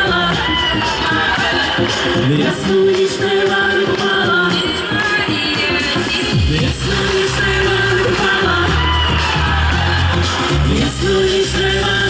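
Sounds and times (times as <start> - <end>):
loud music with singing: 0.0 - 12.0
steady bass line: 6.2 - 12.0.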